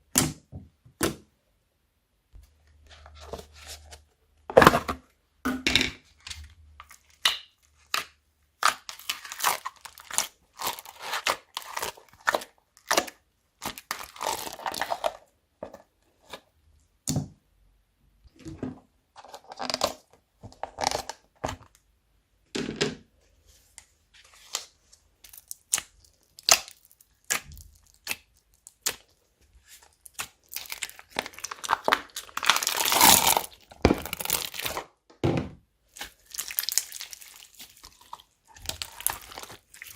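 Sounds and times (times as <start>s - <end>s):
slime squishing: 6.8s - 15.2s, 24.4s - 34.8s, 35.9s - 39.9s.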